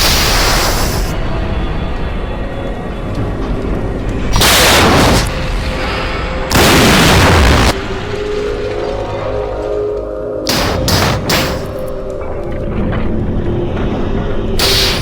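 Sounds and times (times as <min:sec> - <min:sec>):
background music: 0:00.0 - 0:15.0
mouth-made explosion sounds: 0:04.4 - 0:07.9.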